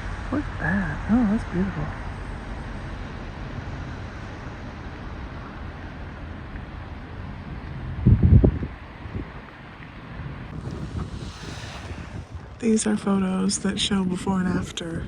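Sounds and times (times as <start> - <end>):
outdoor rushing noise: 0.0 - 15.0
wind buffeting microphone: 2.0 - 15.0.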